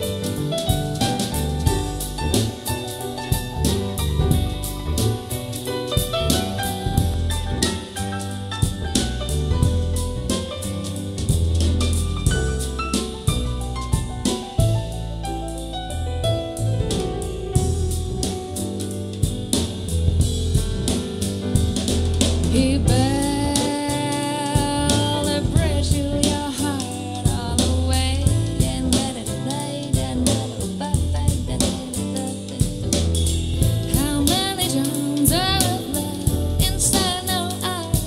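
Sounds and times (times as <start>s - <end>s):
drum kit and bass: 0.0s - 38.0s
person singing: 22.5s - 32.9s, 33.8s - 38.0s.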